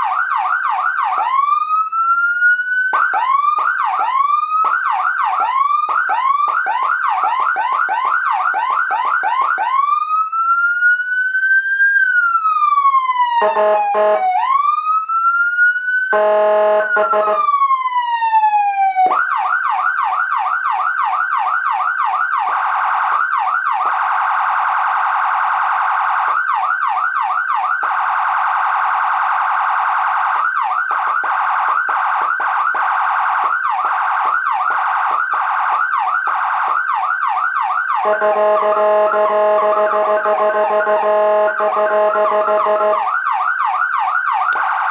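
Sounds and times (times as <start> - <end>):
electronic siren wailing: 0.1 - 44.9
buzzing horn blasts: 13.4 - 14.3, 16.1 - 17.4, 38.0 - 43.0.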